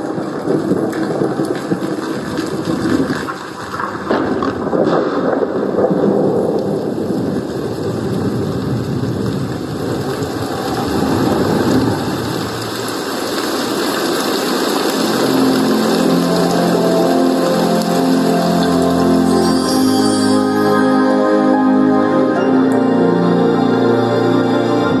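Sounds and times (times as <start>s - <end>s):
thunderstorm and rain recording: 0.0s - 19.8s
pitched music notes: 15.0s - 25.0s.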